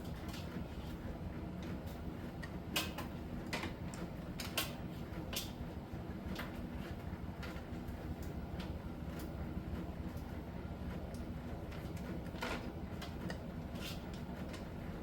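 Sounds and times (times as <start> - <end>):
tumble dryer humming: 0.0 - 15.0.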